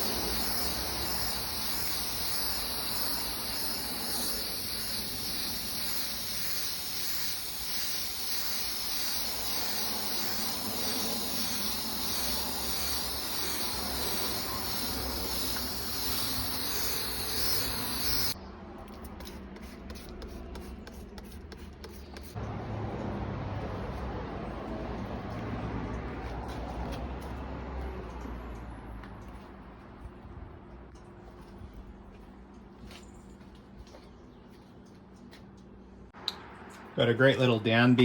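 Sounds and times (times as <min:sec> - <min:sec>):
steady hissing noise: 0:00.0 - 0:18.4.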